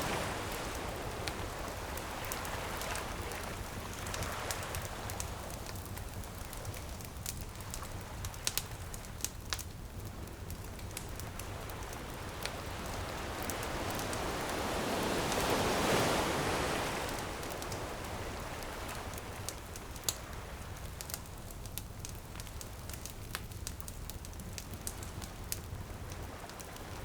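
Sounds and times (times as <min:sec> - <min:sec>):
ocean wave breaking: 0:00.0 - 0:04.9, 0:12.5 - 0:19.2
bonfire crackling and popping: 0:00.0 - 0:27.0.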